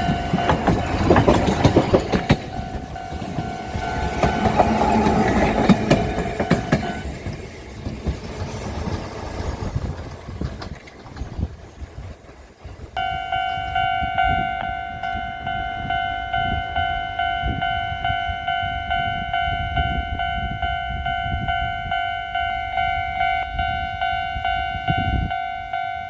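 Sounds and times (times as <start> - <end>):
crossing bell clanging: 0.0 - 7.5, 13.0 - 26.0
tram wheels clacking on rails: 0.0 - 26.0.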